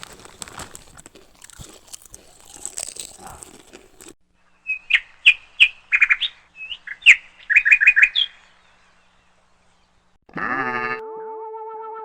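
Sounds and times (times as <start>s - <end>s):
bird chirping: 4.5s - 10.2s.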